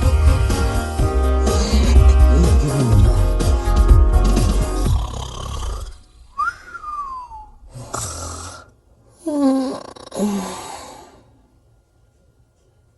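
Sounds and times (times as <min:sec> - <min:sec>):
rasping snore: 0:04.8 - 0:06.1, 0:07.7 - 0:08.7
short low snores: 0:04.9 - 0:08.7
whistled breath out: 0:06.3 - 0:08.5.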